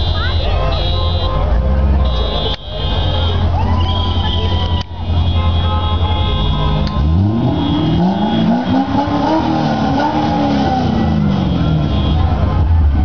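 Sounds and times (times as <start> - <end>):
sports car engine revving: 6.7 - 13.0.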